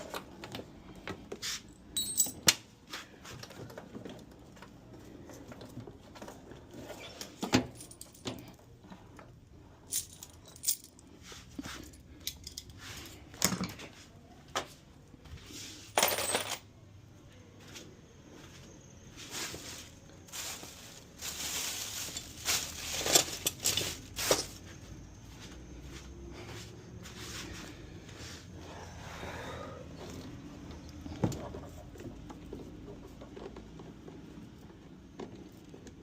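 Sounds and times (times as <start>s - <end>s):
metal tools clinking: 1.7s - 2.6s, 6.9s - 8.7s, 9.8s - 13.8s, 15.9s - 16.7s, 20.4s - 24.7s.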